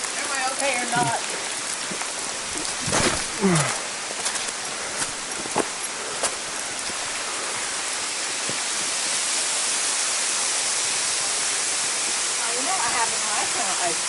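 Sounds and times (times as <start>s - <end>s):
water drips splashing: 0.0s - 9.2s
falling water rushing: 0.0s - 14.0s.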